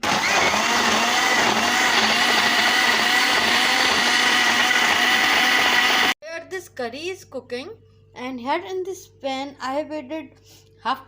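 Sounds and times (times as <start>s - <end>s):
electric blender running: 0.0s - 6.2s.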